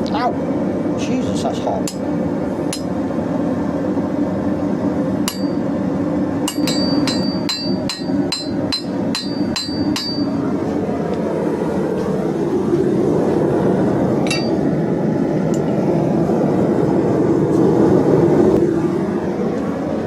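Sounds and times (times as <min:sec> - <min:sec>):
steady rushing noise: 0:00.3 - 0:20.0
hammer striking hot steel: 0:01.8 - 0:02.1, 0:02.7 - 0:02.9, 0:05.2 - 0:05.6, 0:06.4 - 0:10.4, 0:14.2 - 0:14.6.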